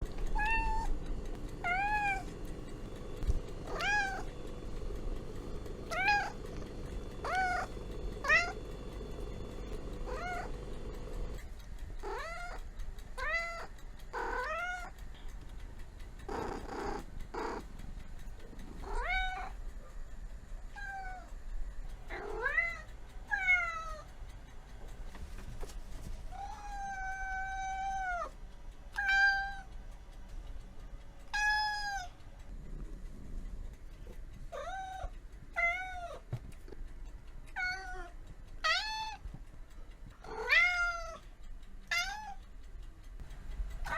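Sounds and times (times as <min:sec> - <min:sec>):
cat meowing: 0:00.4 - 0:00.9, 0:01.6 - 0:02.3, 0:03.6 - 0:04.3, 0:05.9 - 0:06.6, 0:07.2 - 0:08.6, 0:10.1 - 0:10.5, 0:12.0 - 0:12.6, 0:13.2 - 0:14.9, 0:18.9 - 0:19.6, 0:26.4 - 0:28.3, 0:31.3 - 0:32.1, 0:34.5 - 0:36.2, 0:37.6 - 0:38.0, 0:38.6 - 0:39.2, 0:40.3 - 0:41.2, 0:41.9 - 0:42.4.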